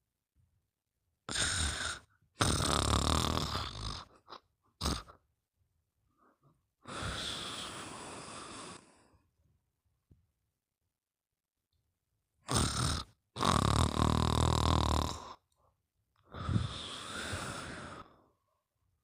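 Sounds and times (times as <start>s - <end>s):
person snoring: 1.3s - 5.2s, 6.8s - 9.1s, 12.5s - 15.4s, 16.3s - 18.2s.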